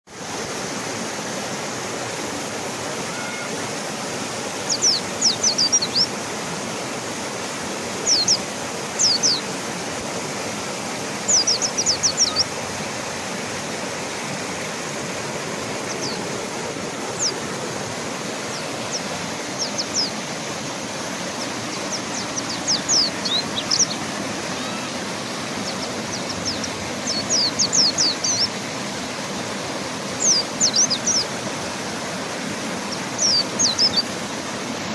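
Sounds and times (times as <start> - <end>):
fast-flowing river rushing: 0.1 - 34.9
bird chirping: 4.7 - 6.1, 8.0 - 8.4, 9.0 - 9.4, 11.3 - 12.6, 15.8 - 16.3, 18.5 - 20.2, 21.4 - 24.0, 25.6 - 28.5, 30.2 - 31.2, 33.2 - 34.0.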